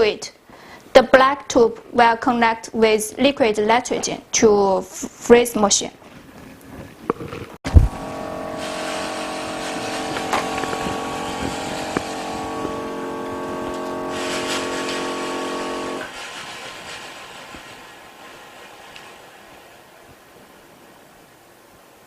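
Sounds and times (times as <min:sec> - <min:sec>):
vacuum pump humming: 0:07.7 - 0:16.3.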